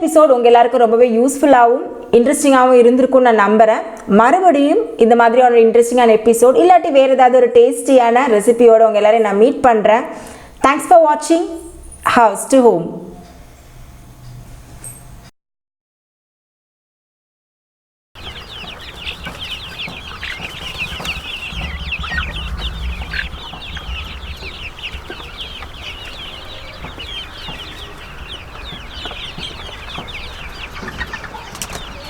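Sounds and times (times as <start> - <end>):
chicks peeping: 18.2 - 32.0
low rumble: 19.1 - 30.8.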